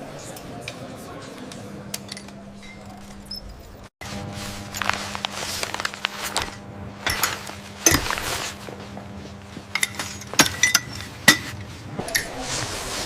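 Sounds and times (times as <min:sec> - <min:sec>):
soft rustling: 0:04.0 - 0:06.6, 0:07.2 - 0:09.7.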